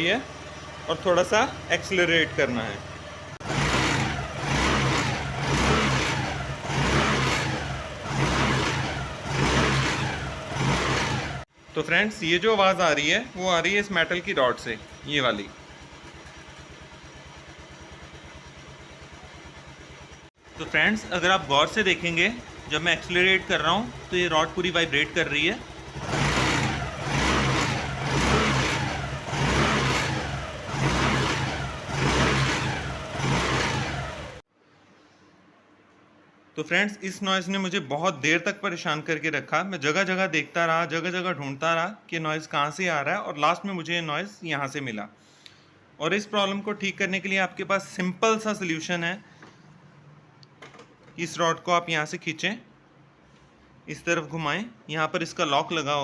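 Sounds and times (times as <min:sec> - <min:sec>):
scooter engine revving: 0:00.0 - 0:34.5.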